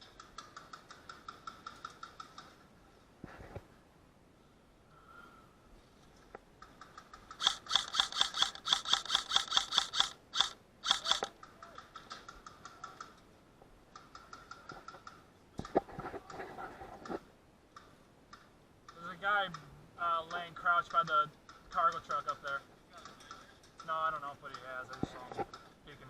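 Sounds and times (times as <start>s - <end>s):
airsoft gun firing bursts: 7.4s - 11.3s.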